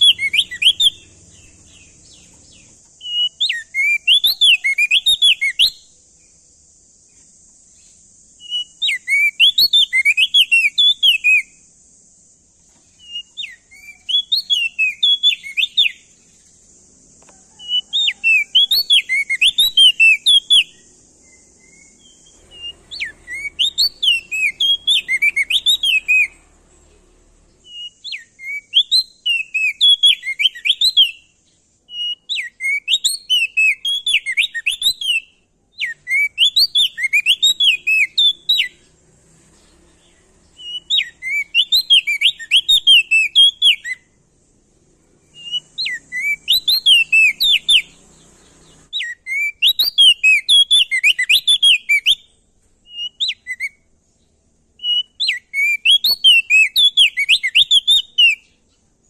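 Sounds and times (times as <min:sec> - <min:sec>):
faint hiss: 0:00.0 - 0:50.5
bird singing rapid sweeping chirps: 0:00.0 - 0:59.0.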